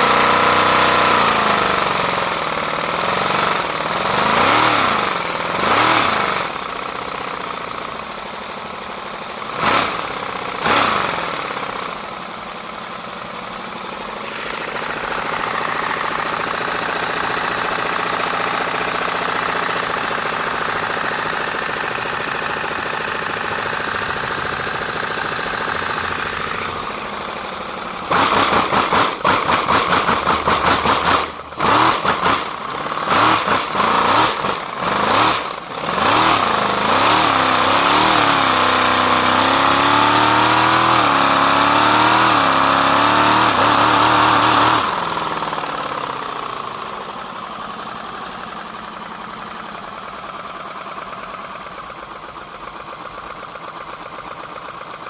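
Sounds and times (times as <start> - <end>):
air-powered model engine running: 28.1 - 47.2.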